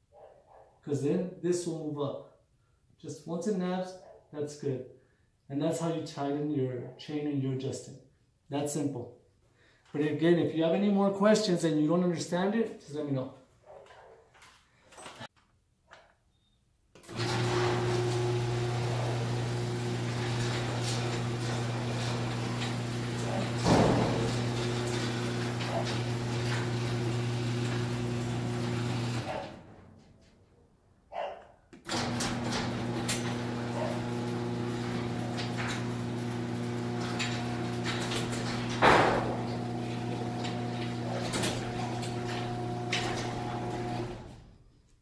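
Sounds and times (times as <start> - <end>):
garage door opener motor humming: 17.0 - 30.2, 31.8 - 44.6
garage door clunk: 17.0 - 30.5, 31.8 - 44.6.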